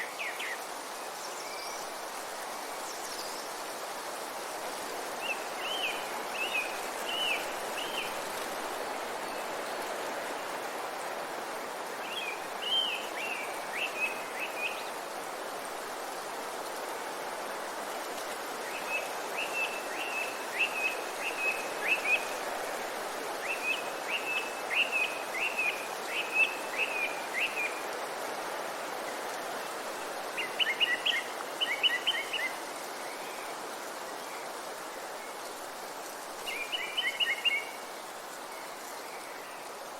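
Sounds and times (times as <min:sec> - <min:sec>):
songbird singing: 0:00.0 - 0:02.0, 0:05.2 - 0:08.4, 0:11.9 - 0:15.0, 0:18.6 - 0:27.9, 0:30.0 - 0:33.6, 0:35.2 - 0:39.8
steady background hiss: 0:00.0 - 0:39.9.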